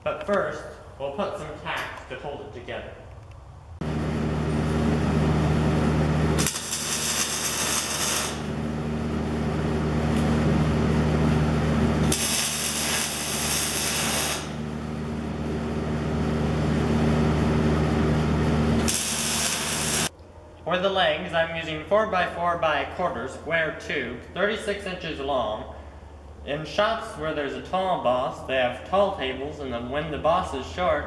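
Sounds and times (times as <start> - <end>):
welding machine humming: 3.8 - 20.1
welding arc hiss and crackle: 6.4 - 8.6, 12.0 - 14.7, 18.8 - 20.1.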